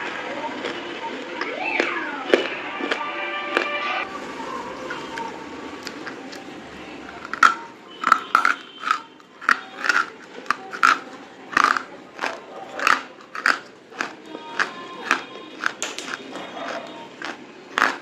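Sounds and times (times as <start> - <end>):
crunchy chalk being bitten: 5.8 - 18.0.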